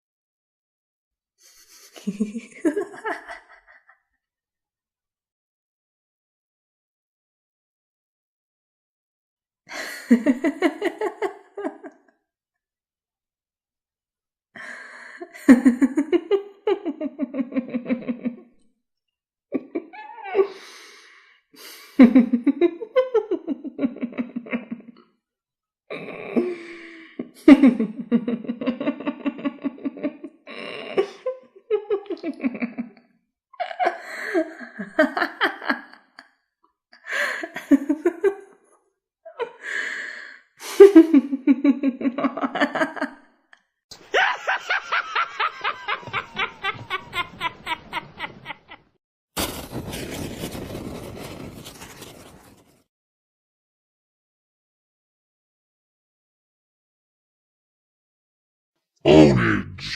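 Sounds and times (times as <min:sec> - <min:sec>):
recorded laughs: 0:01.4 - 0:04.1, 0:09.8 - 0:12.1, 0:26.7 - 0:33.0, 0:33.6 - 0:36.2, 0:40.7 - 0:43.3, 0:43.9 - 0:49.0.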